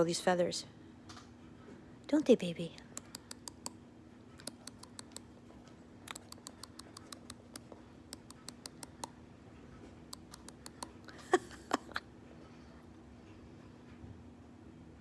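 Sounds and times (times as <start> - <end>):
faint low hum: 0.0 - 15.0
sharp light clicks: 2.8 - 3.8, 4.4 - 5.3, 6.1 - 9.1, 10.2 - 11.0.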